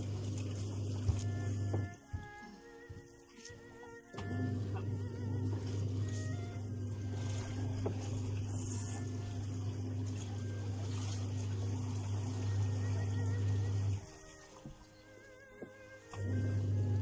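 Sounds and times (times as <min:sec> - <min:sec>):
washing machine motor humming: 0:00.0 - 0:17.0.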